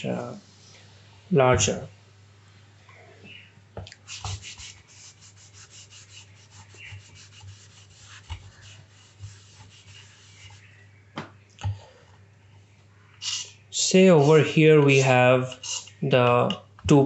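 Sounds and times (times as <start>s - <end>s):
pen scratching on paper: 4.1s - 10.6s.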